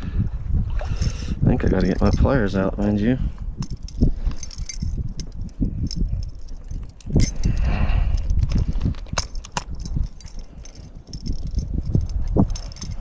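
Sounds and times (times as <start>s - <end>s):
clicks and knocks in a kayak: 3.6s - 13.0s.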